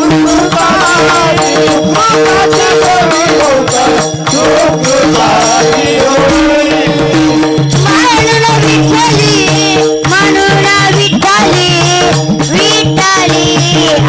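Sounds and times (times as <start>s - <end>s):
held drone tones: 0.0s - 10.1s
hand drum beat: 0.0s - 14.0s
wavering melodic vocal line: 0.0s - 14.0s.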